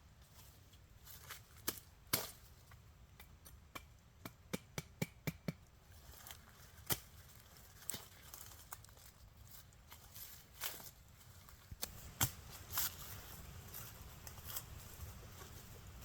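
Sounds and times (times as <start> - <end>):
chopping strikes on wood: 3.2 - 5.6.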